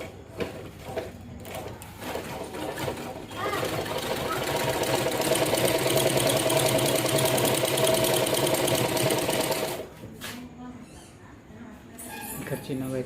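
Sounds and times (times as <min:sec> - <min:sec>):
sewing machine stitching: 0:00.0 - 0:09.9.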